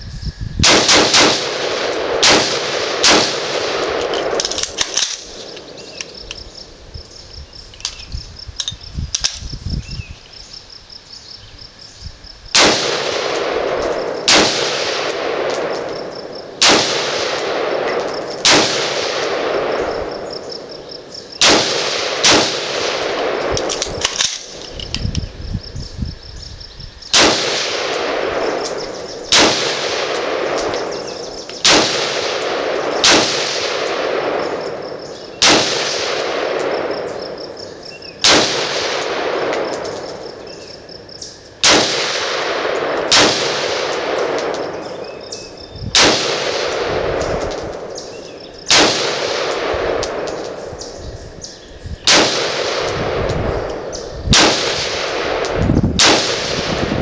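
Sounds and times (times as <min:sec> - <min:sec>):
gunshot echo: 0:00.6 - 0:05.6, 0:12.6 - 0:20.4, 0:21.4 - 0:24.6, 0:27.1 - 0:37.3, 0:38.2 - 0:40.1, 0:41.6 - 0:45.0, 0:45.9 - 0:48.0, 0:48.7 - 0:50.6, 0:52.1 - 0:57.0
rifle firing single shots: 0:00.6 - 0:06.8, 0:12.5 - 0:24.9, 0:27.1 - 0:40.8, 0:41.6 - 0:50.9, 0:52.0 - 0:57.0.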